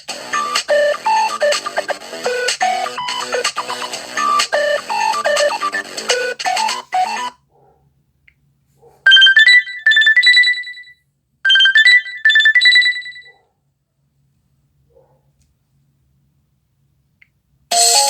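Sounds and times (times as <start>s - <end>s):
multi-note ringtone melody: 0.1s - 7.3s, 9.1s - 10.9s, 11.5s - 13.2s, 17.7s - 18.0s.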